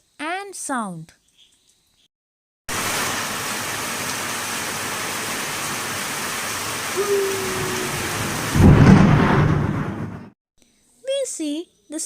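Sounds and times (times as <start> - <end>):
heavy rain hiss: 2.7 - 9.6.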